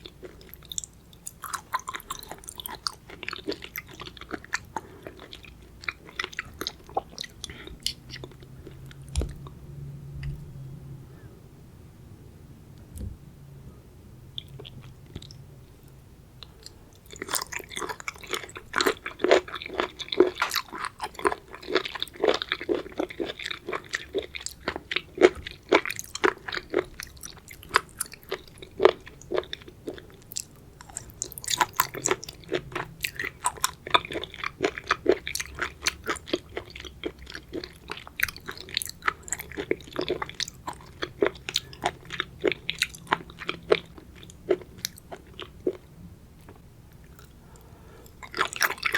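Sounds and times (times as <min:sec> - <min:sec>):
crunchy wet chewing: 0:00.0 - 0:09.6, 0:16.4 - 0:48.9.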